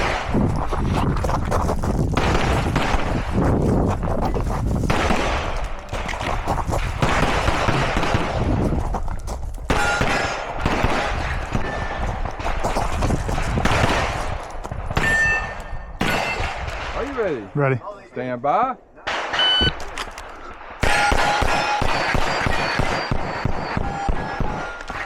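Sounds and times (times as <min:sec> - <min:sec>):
short metallic rings: 0:15.0 - 0:16.4.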